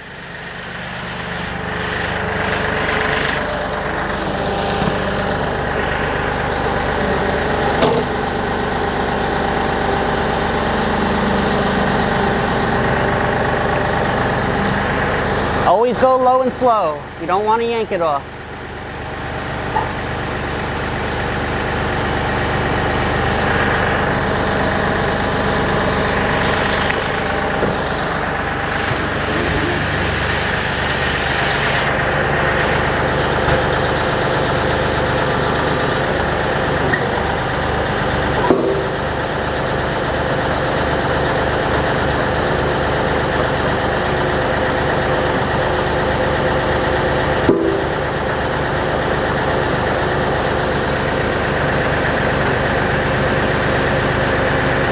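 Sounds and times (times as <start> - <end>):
tractor diesel engine running: 0.0 - 54.9.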